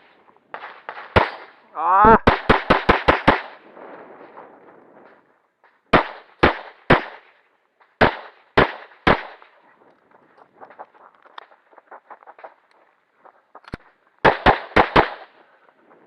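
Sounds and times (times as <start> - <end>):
pistol shots: 0.5 - 3.6, 5.9 - 7.3, 8.0 - 9.6, 14.2 - 15.4.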